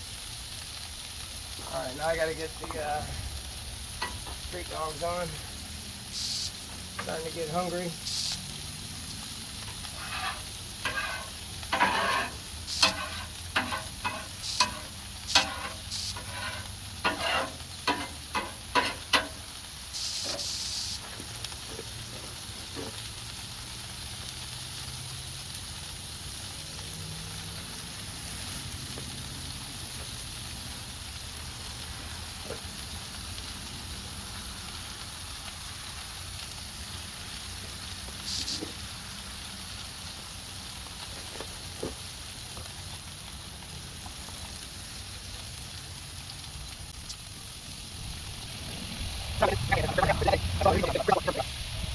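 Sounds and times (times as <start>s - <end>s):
meat sizzling as it fries: 0.0s - 51.9s
short loud hiss: 6.1s - 6.7s, 8.0s - 8.5s, 9.9s - 18.1s, 18.8s - 21.1s.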